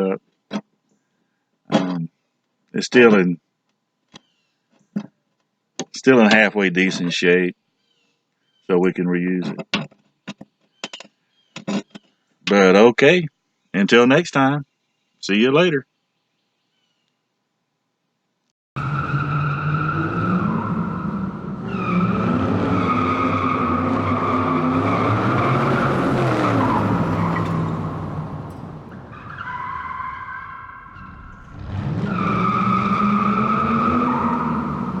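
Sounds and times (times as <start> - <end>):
car engine revving: 18.8 - 35.0
tyre squeal: 19.2 - 35.0.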